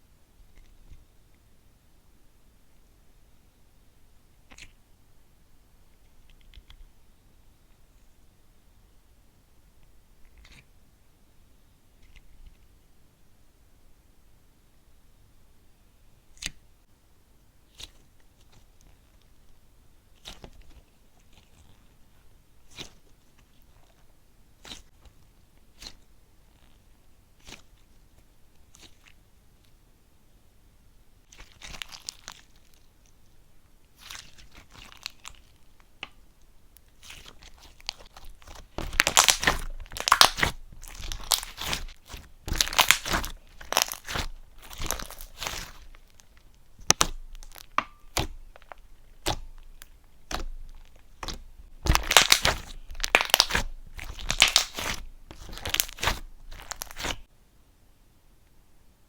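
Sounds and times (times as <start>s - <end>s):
slime crackling when squeezed: 37.0s - 57.3s.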